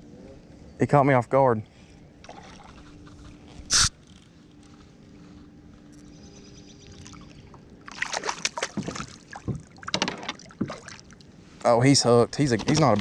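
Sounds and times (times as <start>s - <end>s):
water splashing around kayak: 7.8s - 11.6s.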